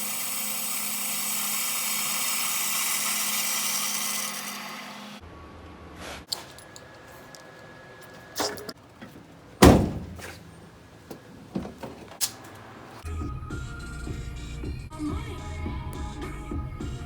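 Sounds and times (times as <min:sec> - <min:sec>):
heavy thud: 0:08.4 - 0:12.2
knocks and clunks: 0:08.4 - 0:12.4.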